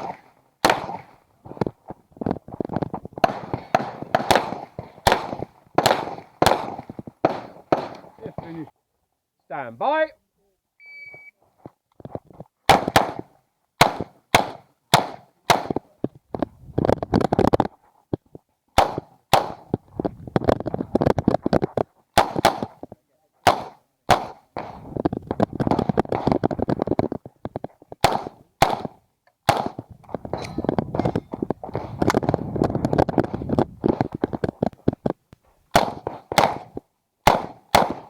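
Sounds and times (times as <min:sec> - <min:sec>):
pistol shots: 0:00.0 - 0:01.2, 0:03.2 - 0:08.6, 0:12.7 - 0:15.8, 0:18.8 - 0:19.7, 0:22.2 - 0:22.8, 0:23.4 - 0:24.9, 0:28.0 - 0:32.4, 0:35.7 - 0:38.0.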